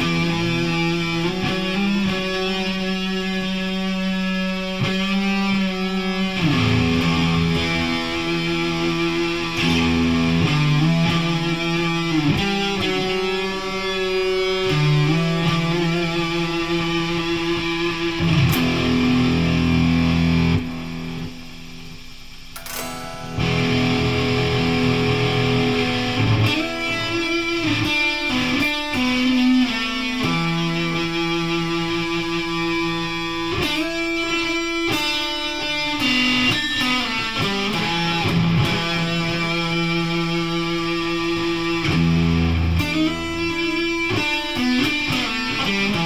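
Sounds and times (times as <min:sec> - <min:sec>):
distorted electric guitar: 0:00.0 - 0:46.0.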